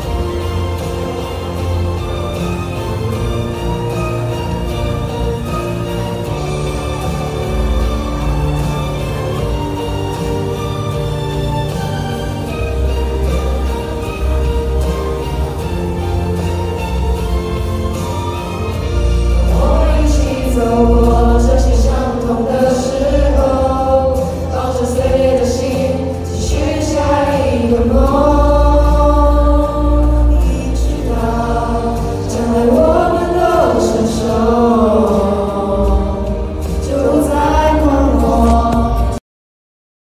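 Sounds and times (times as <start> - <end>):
backing music with heavy bass: 0.0 - 39.2
layered choir-like vocals: 0.0 - 39.2
person singing pop song: 19.4 - 39.2.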